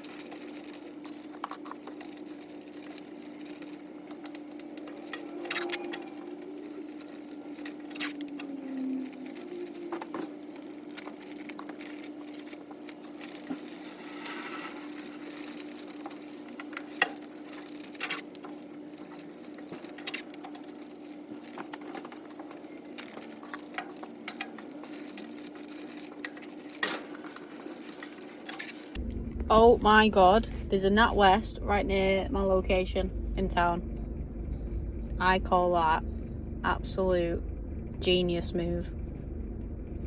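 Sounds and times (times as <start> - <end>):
stock being handled and packed: 0.0 - 29.0
steady low hum: 0.0 - 40.0.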